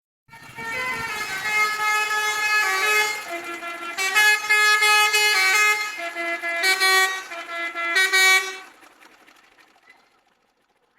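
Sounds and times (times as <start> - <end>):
musical air horn playing tune: 0.3 - 8.8.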